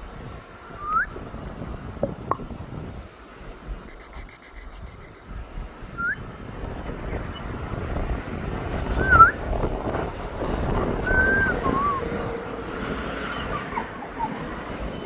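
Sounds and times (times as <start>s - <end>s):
dog huffing: 3.9s - 5.3s, 13.2s - 15.0s
dog whining: 6.8s - 7.7s, 13.1s - 15.0s.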